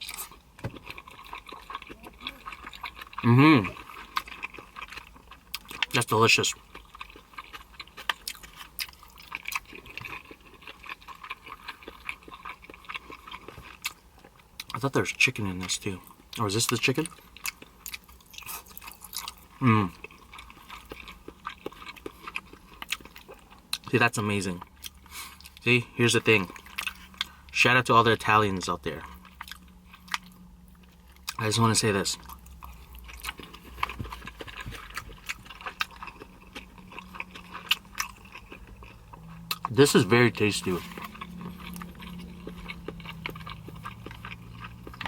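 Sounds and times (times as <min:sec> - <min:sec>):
chewing pasta: 0:00.0 - 0:27.6, 0:28.2 - 0:45.0
faint low hum: 0:00.0 - 0:45.0.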